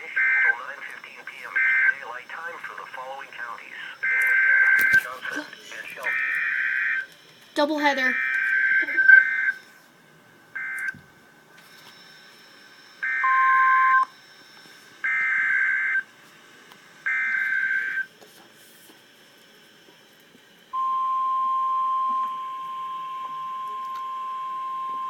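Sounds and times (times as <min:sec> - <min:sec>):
steady single-pitch alarm tone: 0:01.5 - 0:02.0, 0:03.9 - 0:05.1, 0:06.0 - 0:09.7, 0:10.6 - 0:11.0, 0:11.6 - 0:16.1, 0:17.0 - 0:18.1, 0:20.7 - 0:25.0.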